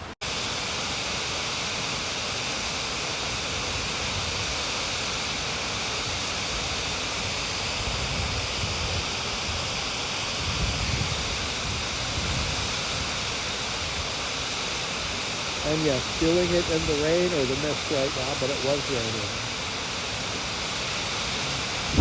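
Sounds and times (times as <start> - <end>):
waterfall pouring: 11.2 - 22.0.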